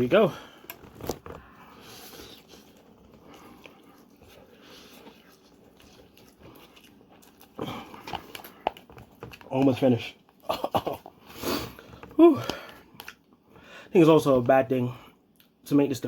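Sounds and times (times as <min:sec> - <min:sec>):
soft chewing of noodles: 0:00.4 - 0:13.6.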